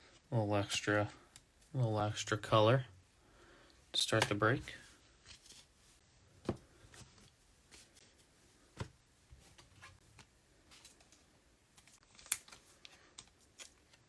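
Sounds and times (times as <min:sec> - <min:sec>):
cards rustling: 0:04.0 - 0:05.8, 0:09.4 - 0:14.0.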